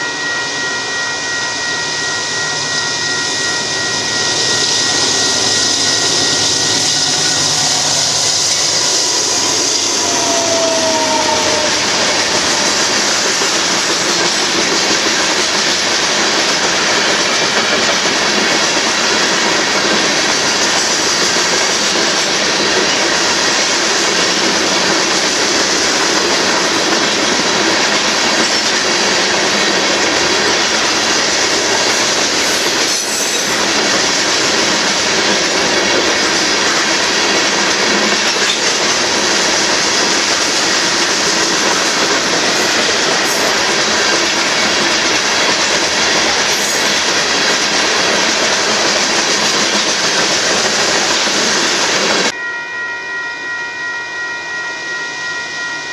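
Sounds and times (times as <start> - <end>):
steel wheels on rail: 0.0 - 55.9.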